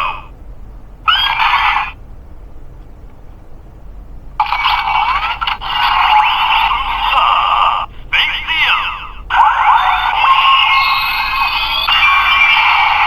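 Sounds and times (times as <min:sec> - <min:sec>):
toy sound effects from tinny speaker: 0:01.1 - 0:02.0, 0:08.2 - 0:13.0.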